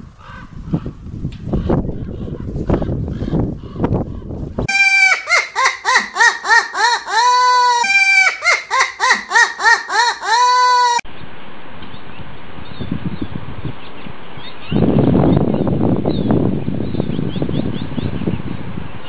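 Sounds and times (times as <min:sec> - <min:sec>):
bird calling loudly: 0:04.7 - 0:11.0.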